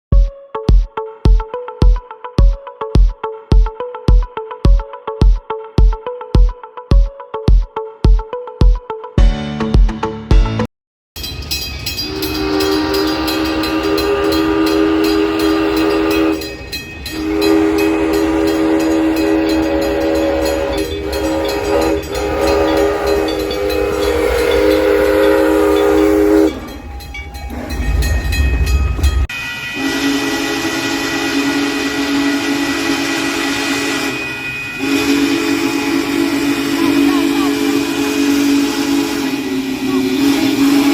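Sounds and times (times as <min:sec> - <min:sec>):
low rumble of train: 0:11.2 - 0:40.9
train horn blasts: 0:12.0 - 0:40.9.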